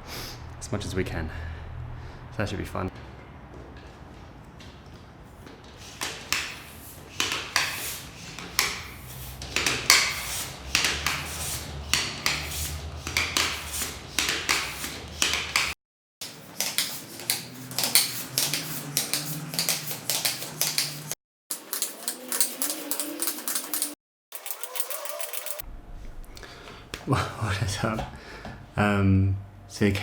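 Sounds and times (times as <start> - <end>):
hand pump strokes: 5.8 - 25.6
low hum: 25.6 - 26.8.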